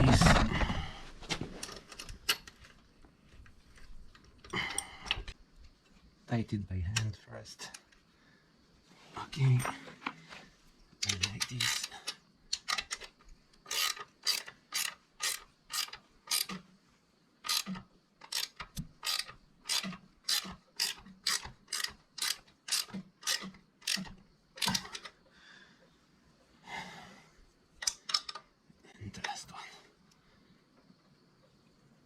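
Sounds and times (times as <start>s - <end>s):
ratchet wrench clicking: 13.7s - 16.6s, 17.4s - 25.1s.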